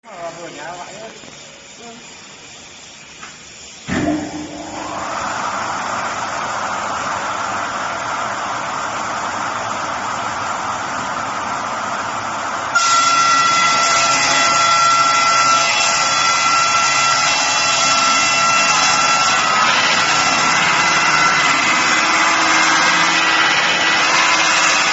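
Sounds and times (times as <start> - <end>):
high-pitched saw whine: 3.9 - 5.9, 12.7 - 24.9
circular saw rushing noise: 3.9 - 24.9.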